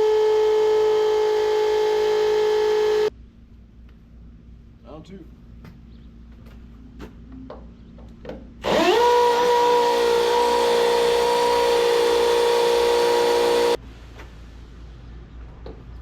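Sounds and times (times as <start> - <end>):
power drill boring into brick: 0.0 - 3.1, 8.6 - 13.8.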